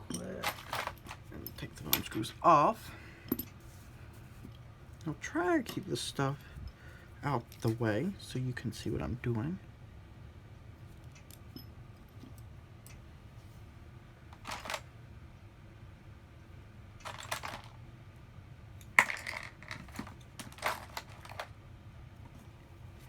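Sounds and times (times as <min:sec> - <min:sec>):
small tools clinking and rattling: 0:00.0 - 0:02.4, 0:03.2 - 0:03.6, 0:14.4 - 0:14.8, 0:17.0 - 0:17.8, 0:18.9 - 0:21.5.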